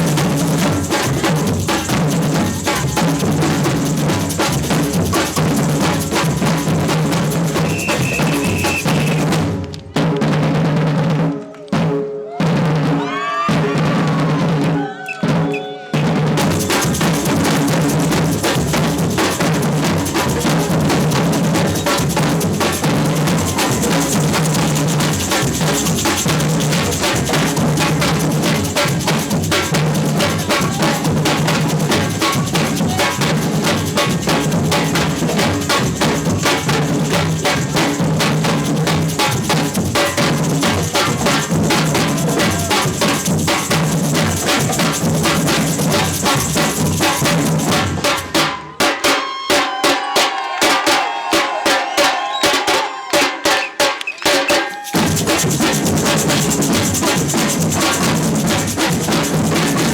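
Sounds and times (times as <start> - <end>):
bass drums: 0.0 - 11.2, 12.7 - 48.3, 55.0 - 59.9
samba percussion band: 0.0 - 59.9
snare drums: 0.0 - 59.9.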